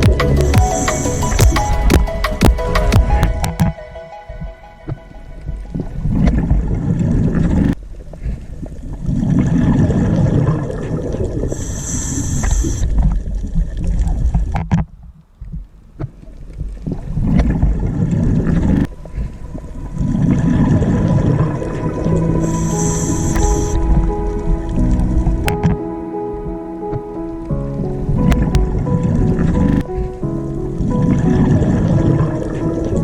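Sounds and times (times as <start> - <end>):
sea water sloshing: 15.4 - 25.8.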